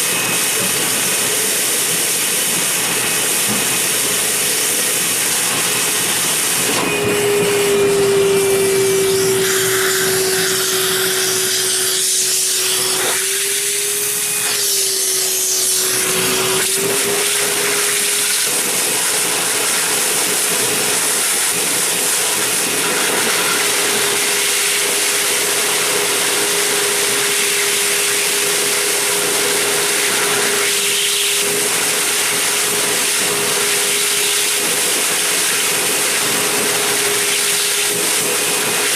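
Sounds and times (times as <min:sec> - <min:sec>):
shop vac sucking water: 0:00.0 - 0:38.9
whistle-like suction tone: 0:06.7 - 0:14.6.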